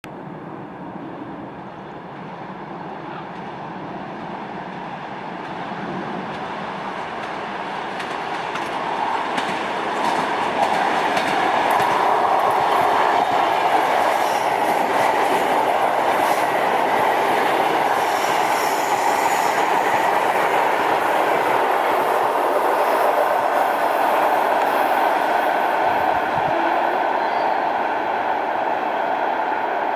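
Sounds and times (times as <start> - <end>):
train wheels clattering: 7.0 - 25.6.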